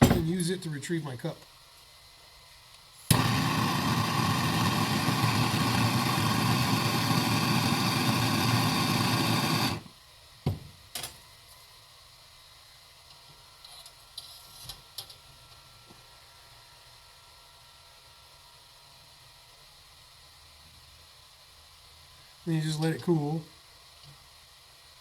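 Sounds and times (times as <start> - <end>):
heating tool rushing hiss: 3.0 - 10.0.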